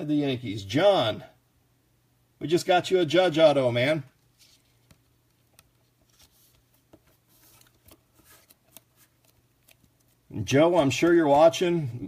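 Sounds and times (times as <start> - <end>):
cards handled on a table: 4.2 - 10.3.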